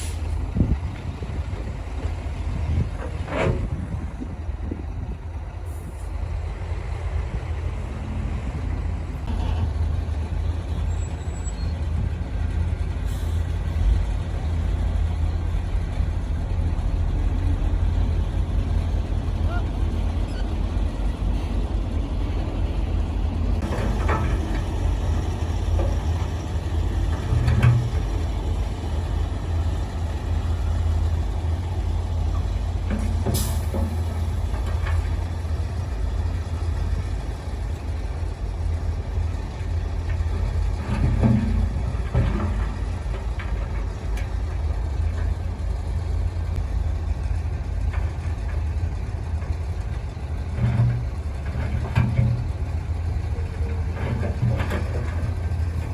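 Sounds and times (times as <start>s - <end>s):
diesel machinery engine drone: 0.0s - 55.9s.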